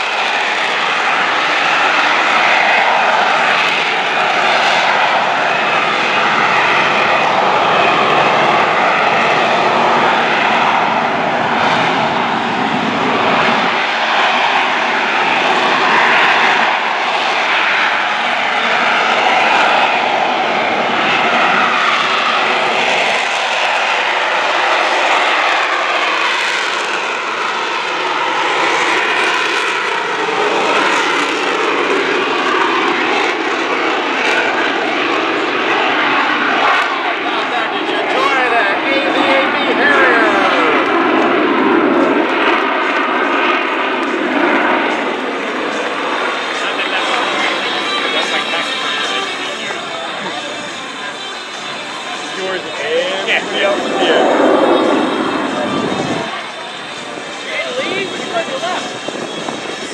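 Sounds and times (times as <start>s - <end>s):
jet engine running loud: 0.0s - 59.9s.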